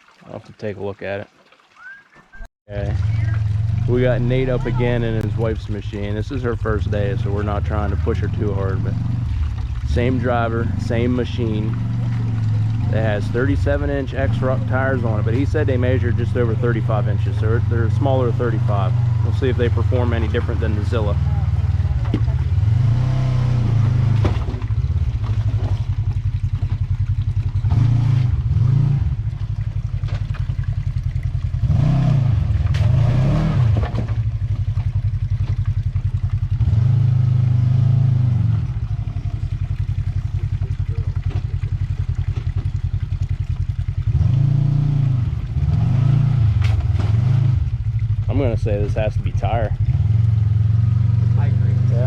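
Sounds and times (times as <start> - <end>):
utility vehicle engine revving: 2.7 - 30.5, 31.1 - 52.0
rocks knocking and clattering: 33.7 - 36.1.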